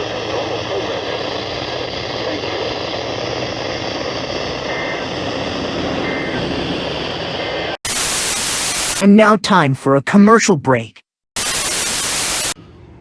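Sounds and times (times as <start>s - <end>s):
two-tone data bursts: 0.0s - 9.0s, 11.4s - 12.6s
radio static hiss: 0.0s - 9.1s, 11.4s - 12.6s.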